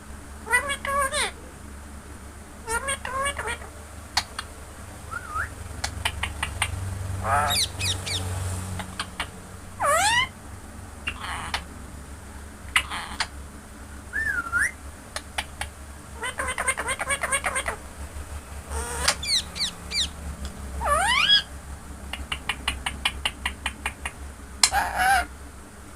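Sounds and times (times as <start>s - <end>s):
parrot squawks: 0.4s - 1.4s, 2.6s - 4.4s, 5.1s - 10.4s, 11.0s - 11.7s, 12.7s - 13.3s, 16.2s - 17.8s, 18.7s - 20.2s, 20.8s - 21.5s, 24.6s - 25.3s
parrot rising whistles: 5.1s - 5.6s, 7.2s - 8.3s, 14.1s - 14.8s, 18.7s - 20.2s, 20.8s - 21.5s
parrot short clicks: 5.8s - 6.8s, 22.1s - 24.8s.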